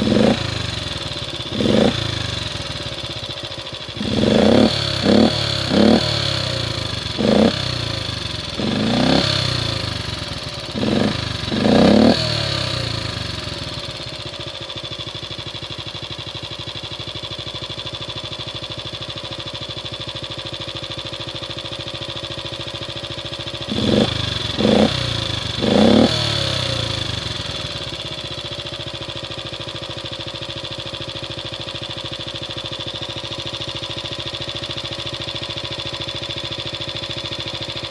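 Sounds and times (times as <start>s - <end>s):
motorcycle engine revving and idling: 0.0s - 37.9s.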